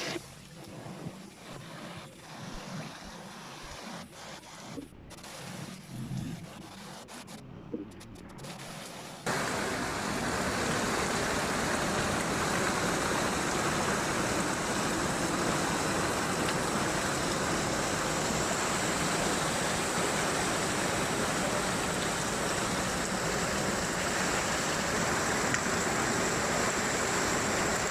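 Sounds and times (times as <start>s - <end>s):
floodwater rushing: 0.0s - 2.6s, 9.2s - 27.9s.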